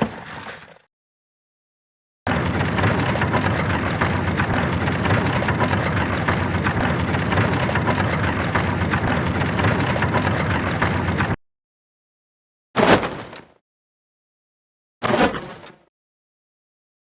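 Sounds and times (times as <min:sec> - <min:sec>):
wooden wheels rumbling and clattering: 0:02.3 - 0:11.4.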